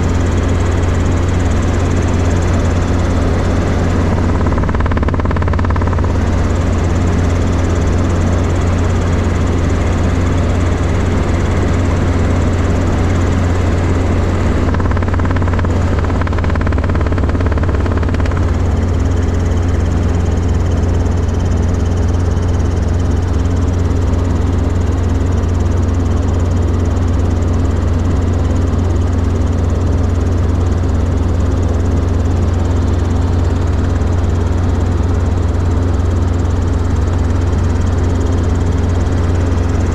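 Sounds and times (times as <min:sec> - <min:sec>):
helicopter engine and rotors droning: 0:00.0 - 0:39.9.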